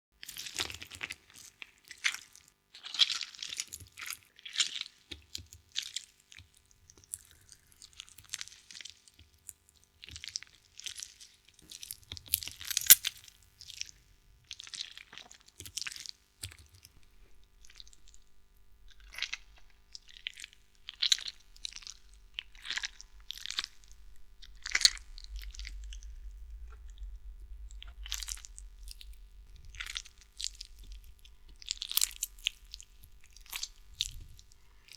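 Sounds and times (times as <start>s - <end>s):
low rumble: 23.2s - 34.4s.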